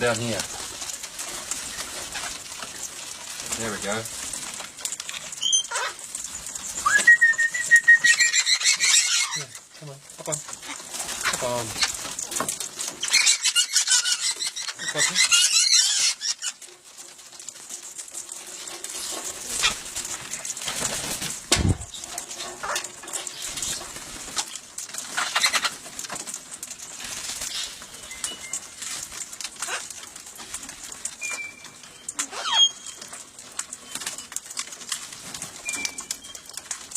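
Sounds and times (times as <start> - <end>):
scratchy rustles: 0.0 - 31.1
birds cooing: 5.7 - 9.5
wing flaps: 18.9 - 25.8.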